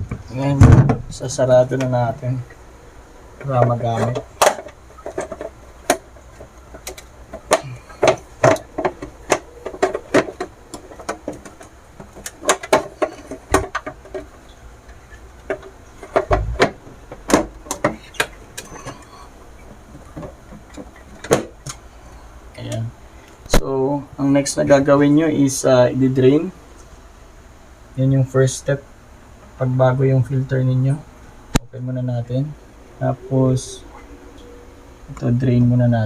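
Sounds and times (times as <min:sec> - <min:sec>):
dull thump: 0:00.0 - 0:01.1
plastic clicks and knocks: 0:04.0 - 0:14.3, 0:15.4 - 0:19.0.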